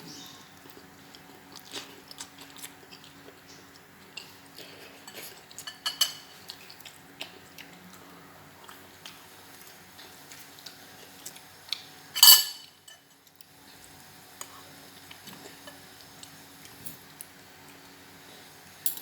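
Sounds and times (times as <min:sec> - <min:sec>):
cutlery clinking against a dish: 0:05.0 - 0:06.4, 0:12.2 - 0:13.1.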